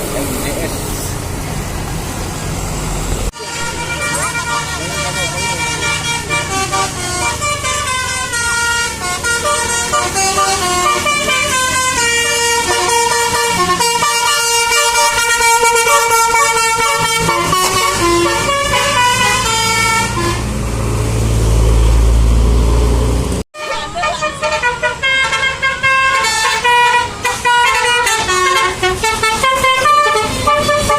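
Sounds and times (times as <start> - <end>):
multi-tone musical air horn: 3.3 - 20.6, 23.6 - 30.9.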